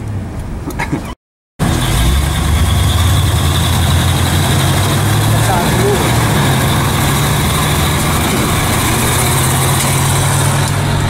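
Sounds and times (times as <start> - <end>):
road and cabin noise: 0.0 - 11.0
truck engine running: 1.6 - 11.0.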